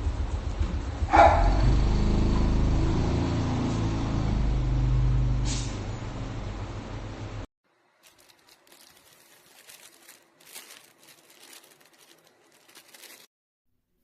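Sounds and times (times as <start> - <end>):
plastic crinkling: 8.0 - 13.3.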